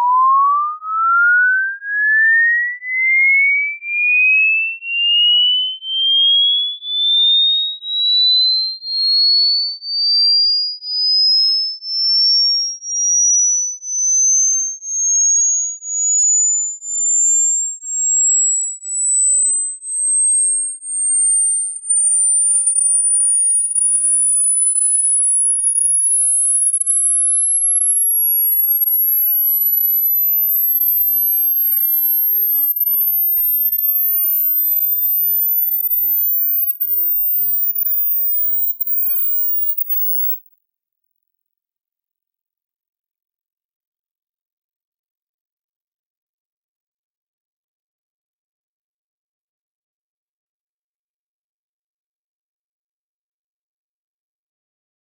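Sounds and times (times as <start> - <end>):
sine tone sweeping upward: 0.0 - 3.6, 11.9 - 40.4.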